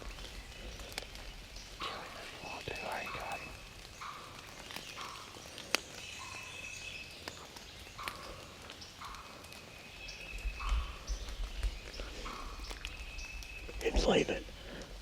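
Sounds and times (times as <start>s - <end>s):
sharp snaps: 7.2s - 9.6s.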